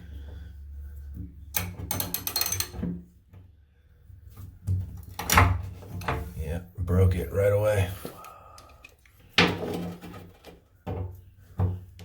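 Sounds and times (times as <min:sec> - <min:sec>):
drain fittings clicking and scraping: 0:01.5 - 0:02.9.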